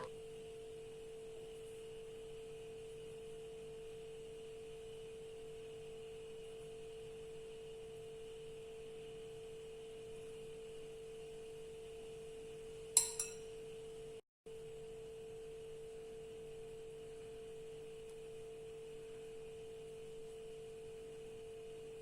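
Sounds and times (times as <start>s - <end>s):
faint electrical hum: 0.0s - 22.0s
hard object clinking: 13.0s - 13.5s.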